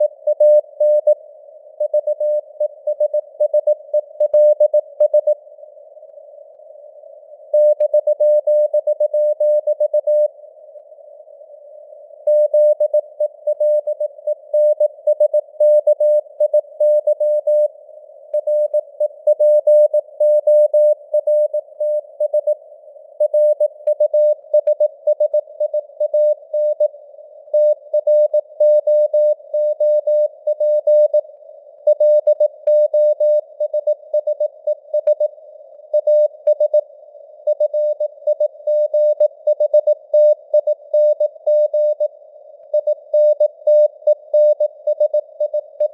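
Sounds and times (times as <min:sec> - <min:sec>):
morse code beeps: 0:31.9 - 0:35.3, 0:36.0 - 0:36.8, 0:37.5 - 0:42.1, 0:42.8 - 0:45.9.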